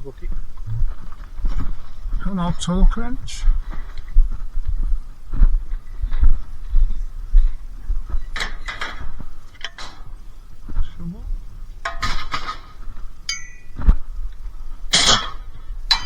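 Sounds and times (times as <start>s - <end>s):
scrap metal clanking: 11.9s - 14.0s
short metallic ring: 13.3s - 14.0s.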